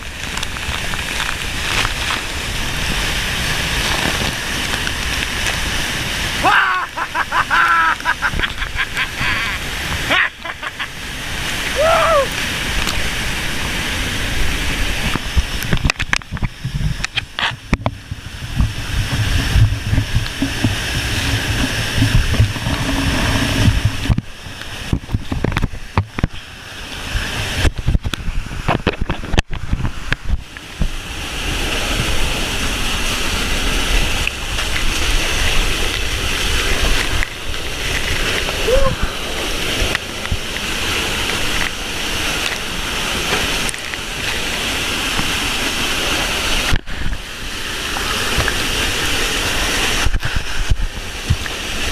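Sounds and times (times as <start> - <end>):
waterfall rushing: 0.0 - 51.9
wind buffeting microphone: 11.3 - 44.2.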